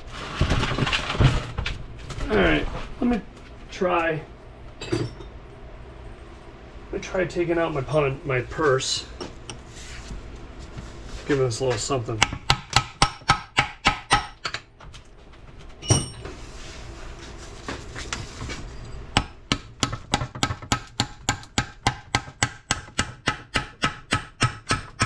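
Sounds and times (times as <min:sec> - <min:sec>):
hammer striking metal punch: 0:12.2 - 0:14.6, 0:15.8 - 0:16.3.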